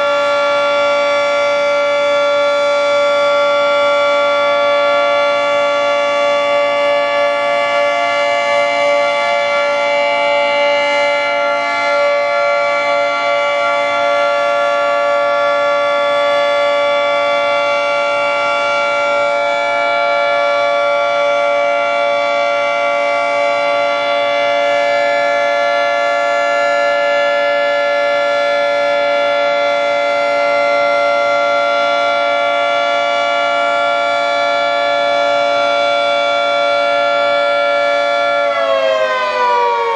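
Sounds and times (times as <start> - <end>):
outdoor warning siren chord: 0.0 - 39.9.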